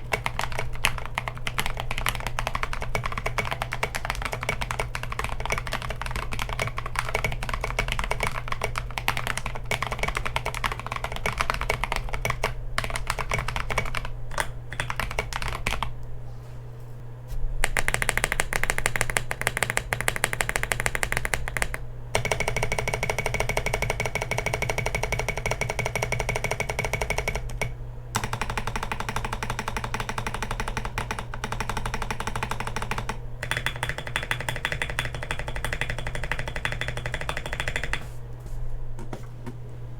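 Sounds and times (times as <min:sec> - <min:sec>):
mechanical keyboard typing: 0:00.0 - 0:15.9, 0:17.6 - 0:38.1.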